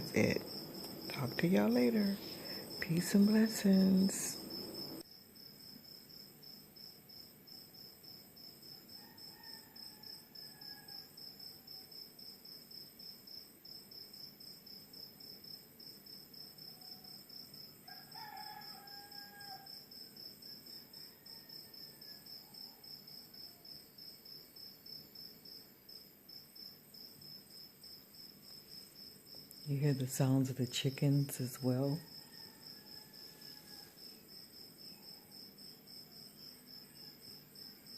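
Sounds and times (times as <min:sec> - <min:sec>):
crickets chirping: 0:00.0 - 0:37.9
distant rooster crowing: 0:08.7 - 0:11.9, 0:17.7 - 0:19.9, 0:20.9 - 0:23.7, 0:32.0 - 0:34.3.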